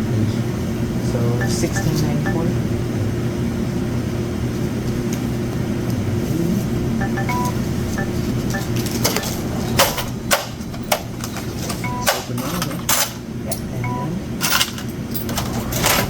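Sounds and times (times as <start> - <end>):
steady low hum: 0.0 - 14.4
cash register beeps: 1.4 - 2.6, 7.0 - 10.1, 11.6 - 12.8, 13.8 - 14.2.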